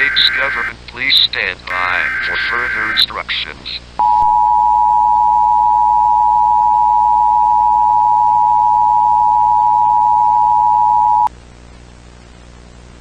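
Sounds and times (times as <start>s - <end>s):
two-tone attention signal: 0.0s - 0.7s, 1.7s - 3.0s.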